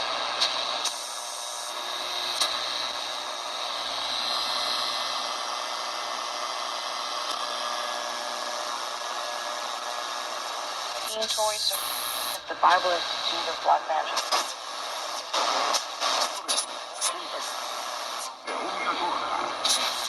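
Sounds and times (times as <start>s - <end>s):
shortwave radio static hiss: 10.8s - 20.0s.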